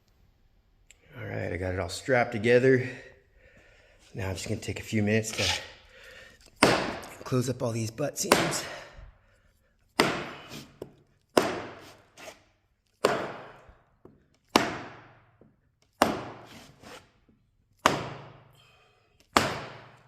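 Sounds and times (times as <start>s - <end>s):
hammer striking floorboards: 6.6s - 7.3s, 8.2s - 8.8s, 10.0s - 12.0s, 13.0s - 16.6s, 17.8s - 18.5s, 19.3s - 20.0s.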